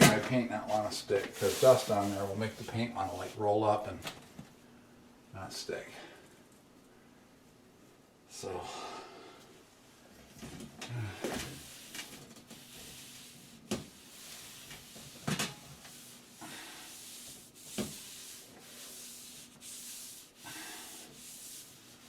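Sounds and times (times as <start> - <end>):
paper towel rubbing surface: 0.6 - 3.5, 11.6 - 22.0.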